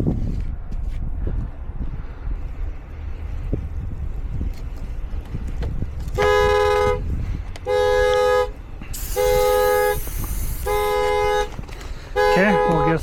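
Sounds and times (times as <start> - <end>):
car horn blasts: 6.1 - 13.0.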